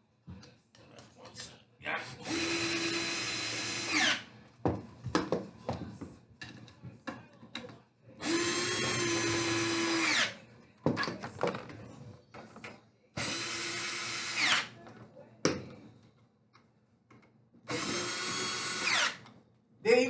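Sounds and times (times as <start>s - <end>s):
power drill driving screws: 2.2s - 4.2s, 8.2s - 10.3s, 13.2s - 14.7s, 17.7s - 19.2s.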